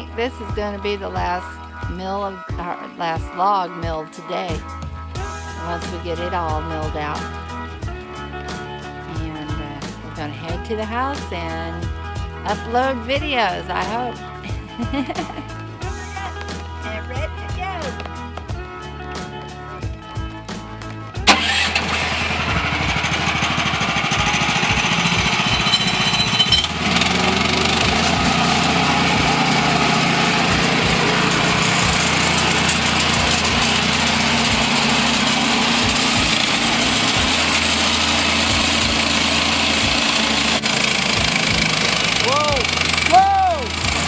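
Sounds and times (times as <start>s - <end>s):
band sawmill cutting log: 5.2s - 13.0s, 20.4s - 44.0s.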